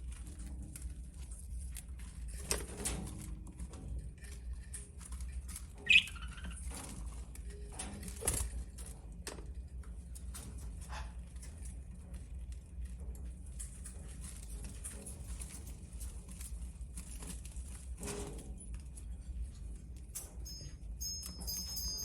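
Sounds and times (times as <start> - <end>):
budgie squawk: 5.9 - 6.4
budgies chattering: 5.9 - 6.4.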